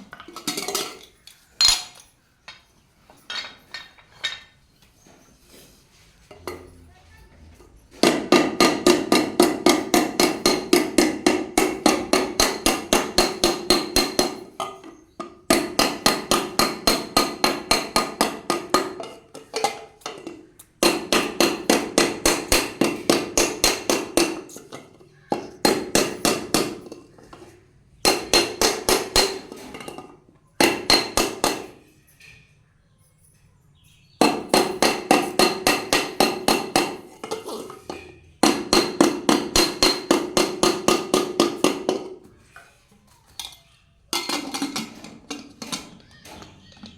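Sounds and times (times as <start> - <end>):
hammer beating ringing metal: 7.9 - 19.1, 34.2 - 37.2, 38.2 - 42.1.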